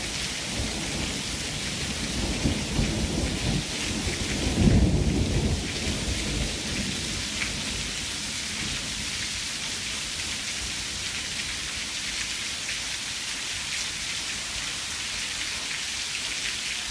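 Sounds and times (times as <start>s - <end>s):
heavy rain pouring: 0.0s - 16.9s
low thunder rumble: 0.4s - 7.9s.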